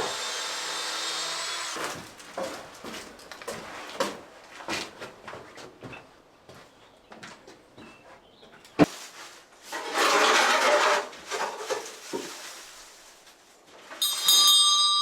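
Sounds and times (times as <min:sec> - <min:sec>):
wood scraping: 0:08.8 - 0:13.0
metal clanging and ringing: 0:14.0 - 0:15.0.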